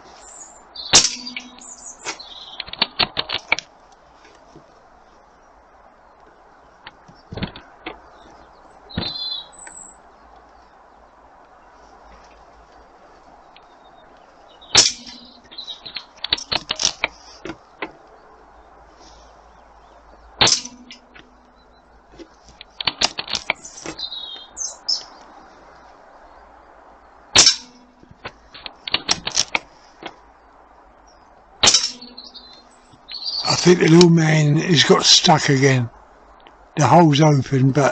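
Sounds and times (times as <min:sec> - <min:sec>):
air rifle shots: 0:00.9 - 0:02.2, 0:14.7 - 0:15.4, 0:27.4 - 0:27.8, 0:31.6 - 0:32.3
pellet clanging on steel target: 0:01.0 - 0:01.8, 0:14.8 - 0:15.4, 0:20.4 - 0:21.1, 0:27.4 - 0:27.9, 0:31.6 - 0:32.3
small metallic clicks: 0:27.4 - 0:30.2.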